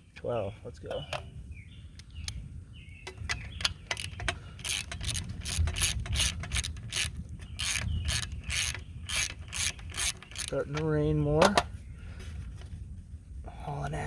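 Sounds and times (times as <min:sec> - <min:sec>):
ratchet wrench clicking: 0:03.6 - 0:10.8.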